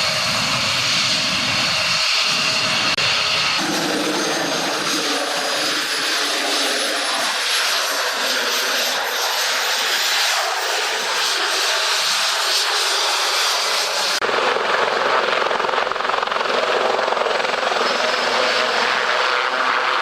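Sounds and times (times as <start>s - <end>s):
high engine whine: 0.0s - 14.2s
aircraft engine rushing: 0.0s - 20.0s.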